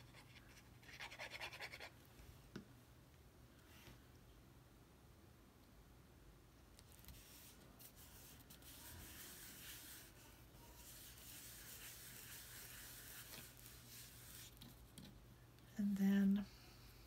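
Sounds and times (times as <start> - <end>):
rubbing and scraping on paper card: 6.8 - 15.2.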